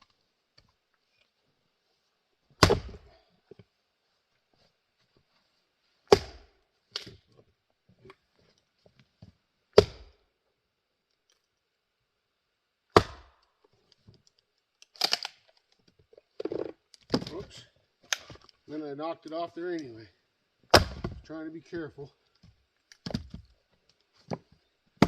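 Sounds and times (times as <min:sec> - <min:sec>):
axe chopping wood: 0:02.6 - 0:03.1, 0:06.1 - 0:07.2, 0:09.8 - 0:10.2, 0:12.9 - 0:13.4, 0:20.7 - 0:21.2.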